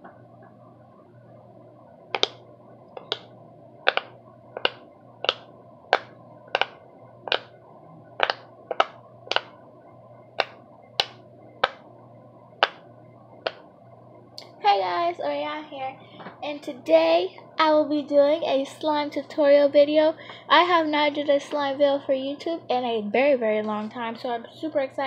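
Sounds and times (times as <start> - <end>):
faint low hum: 0.0 - 25.0
sharp snapping clicks: 2.2 - 2.4, 3.9 - 7.5.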